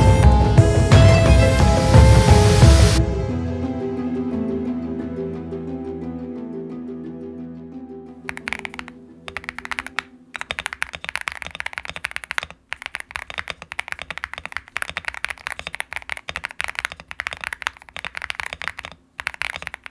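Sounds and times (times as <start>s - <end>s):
mechanical keyboard typing: 8.3s - 19.9s.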